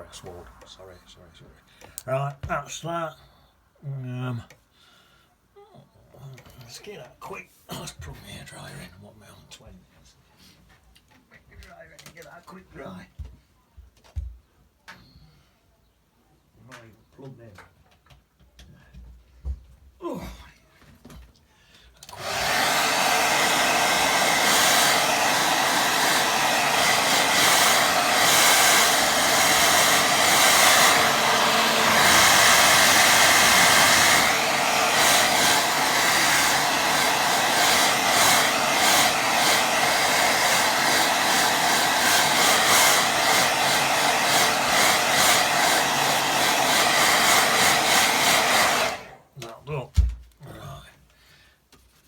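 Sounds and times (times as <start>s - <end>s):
hair dryer running: 22.0s - 49.2s.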